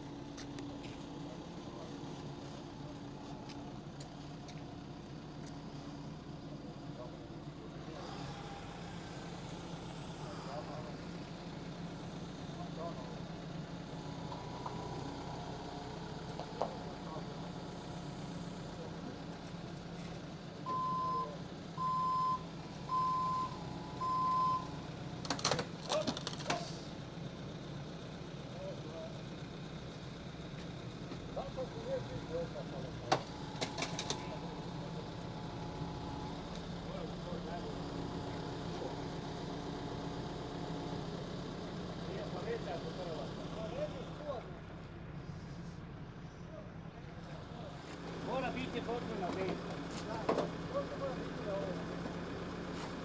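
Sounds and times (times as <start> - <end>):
excavator diesel engine running: 0.0 - 53.0
excavator alarm beeping: 20.6 - 24.8.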